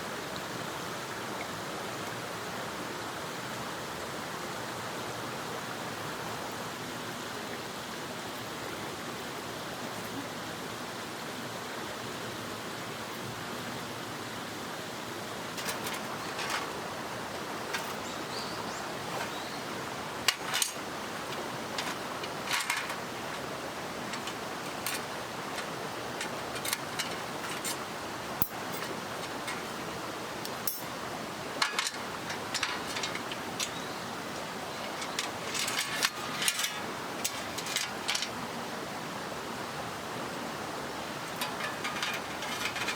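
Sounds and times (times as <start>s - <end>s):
mountain stream rushing: 0.0s - 42.9s
sharp clicks and knocks: 20.2s - 23.4s.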